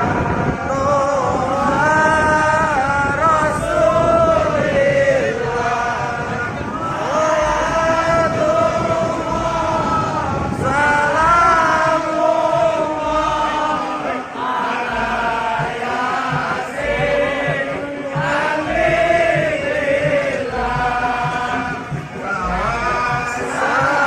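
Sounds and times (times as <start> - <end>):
men chanting devotional song: 0.0 - 24.0
light regular beat: 11.0 - 24.0.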